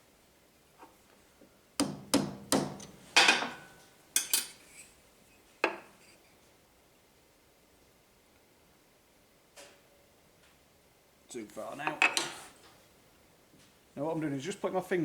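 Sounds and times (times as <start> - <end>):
hammer tapping on metal spanner: 1.8 - 4.5.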